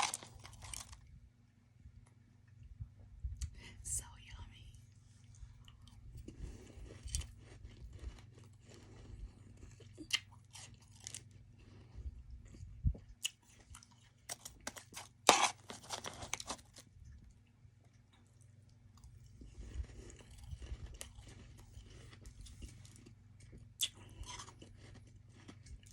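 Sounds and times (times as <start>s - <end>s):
mouth crunching ice: 0.0s - 1.0s, 14.3s - 16.8s.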